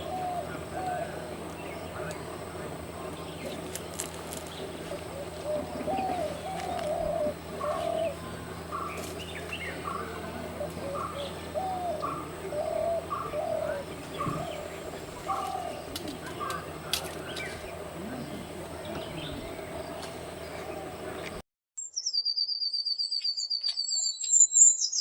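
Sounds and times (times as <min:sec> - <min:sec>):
birds calling: 0:00.0 - 0:21.4
high bird chirps: 0:21.8 - 0:25.0.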